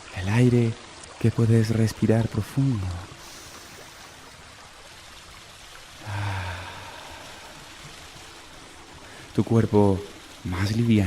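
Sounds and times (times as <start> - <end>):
flowing stream water: 0.0 - 11.0.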